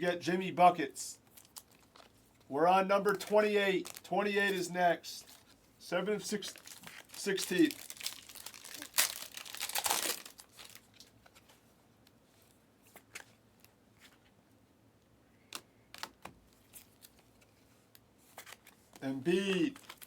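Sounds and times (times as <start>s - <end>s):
wrapper tearing and crinkling: 1.3s - 2.2s, 3.8s - 4.1s, 6.4s - 11.0s, 19.7s - 20.0s.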